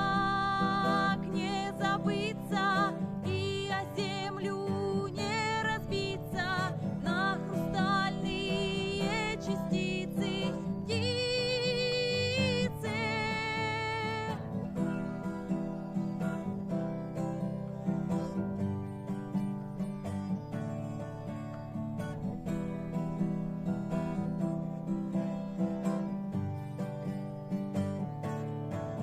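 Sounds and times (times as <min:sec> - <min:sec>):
person singing with vibrato: 0:00.0 - 0:14.8
strummed acoustic guitar: 0:00.0 - 0:29.0.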